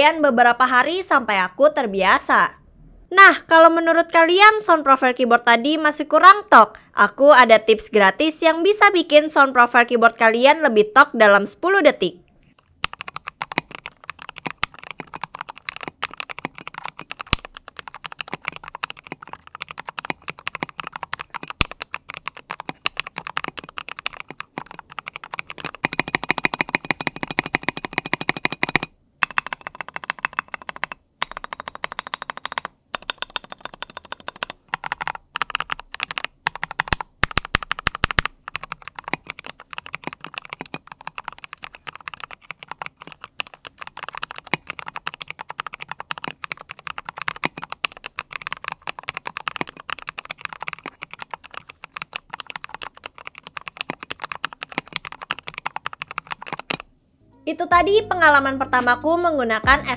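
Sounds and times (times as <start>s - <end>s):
typing on a mechanical keyboard: 12.6s - 56.9s.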